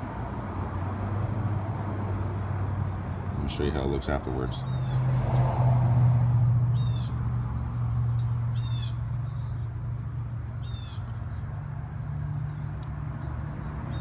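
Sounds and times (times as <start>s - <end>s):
bird calling: 8.5s - 11.2s.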